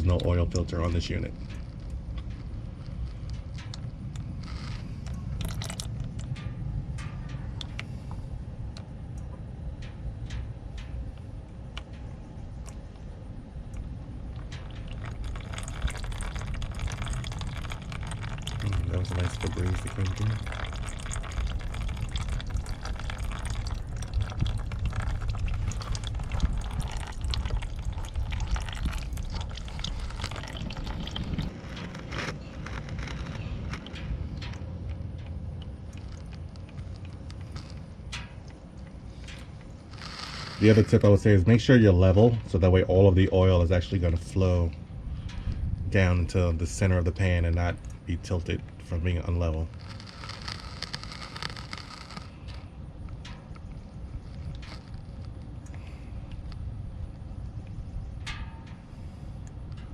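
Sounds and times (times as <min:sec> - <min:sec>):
steady low rumble: 0:00.0 - 0:59.9
oil dripping into pan: 0:01.4 - 0:08.0, 0:08.7 - 0:31.8, 0:32.6 - 0:40.9, 0:49.7 - 0:58.8.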